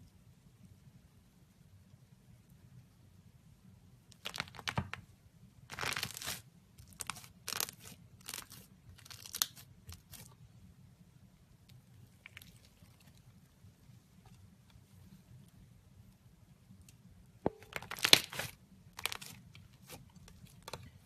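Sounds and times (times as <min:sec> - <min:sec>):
slime crackling when pressed: 0:17.6 - 0:19.4.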